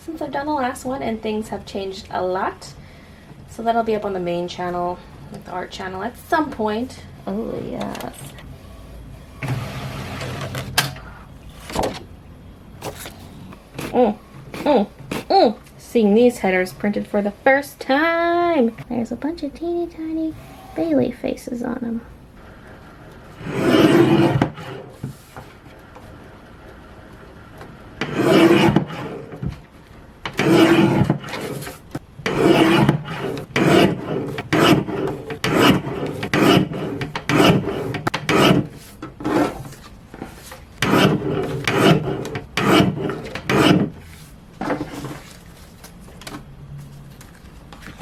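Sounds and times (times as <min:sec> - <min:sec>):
printer head rasping: 0:30.3 - 0:39.6.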